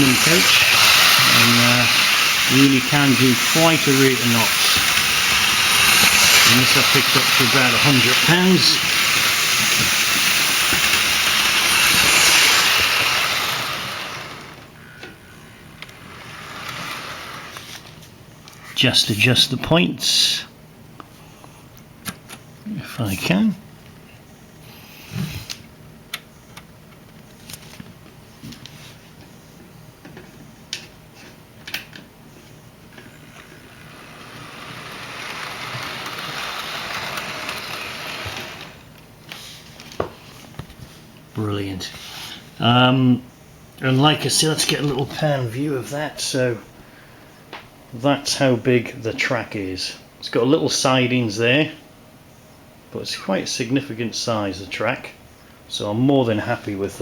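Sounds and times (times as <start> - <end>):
model train whirring hiss: 0.0 - 18.1, 24.6 - 25.6, 33.1 - 39.8, 43.8 - 46.6.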